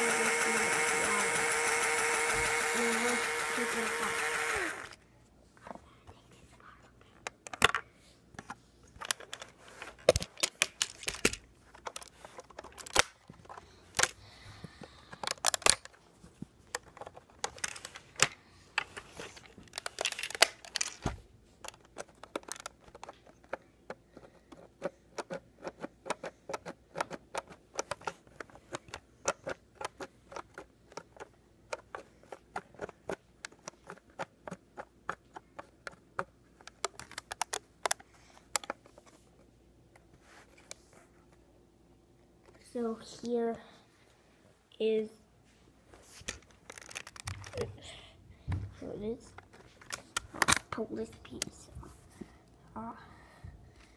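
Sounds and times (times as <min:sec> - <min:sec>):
plastic bricks clicking and snapping: 0:09.0 - 0:14.2, 0:14.9 - 0:16.0, 0:16.7 - 0:38.8, 0:46.3 - 0:47.7.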